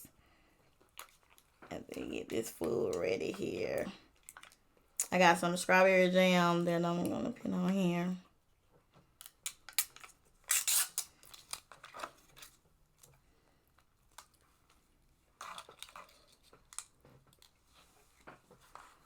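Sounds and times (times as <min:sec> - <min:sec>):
jam packet tearing and rustling: 0:09.5 - 0:12.6, 0:15.4 - 0:17.7.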